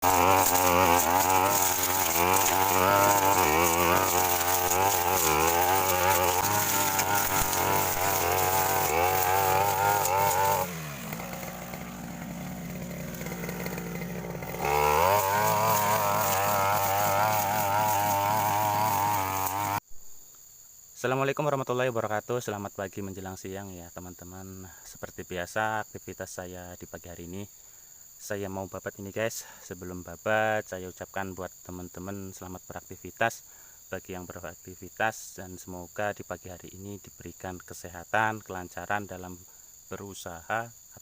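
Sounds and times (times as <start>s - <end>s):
brush cutter engine: 0.0s - 19.8s.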